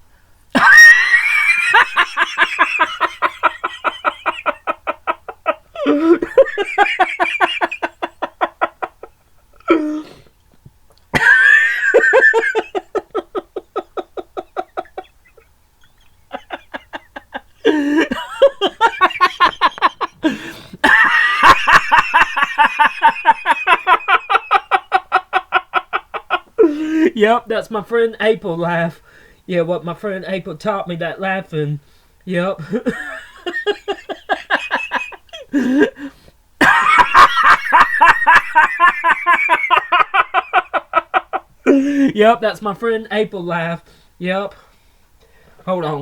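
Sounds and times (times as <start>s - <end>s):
man imitating a woman's laugh: 0.6s - 10.2s, 11.1s - 27.2s, 32.6s - 42.1s.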